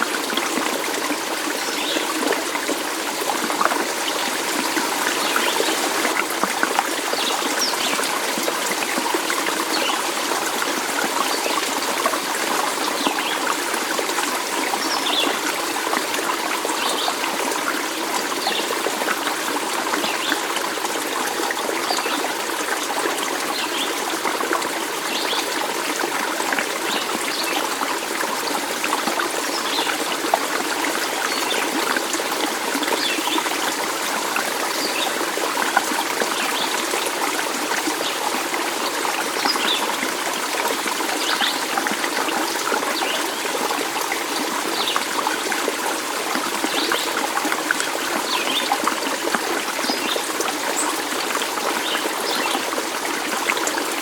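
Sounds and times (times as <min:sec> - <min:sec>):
stream trickling and babbling: 0:00.0 - 0:54.0.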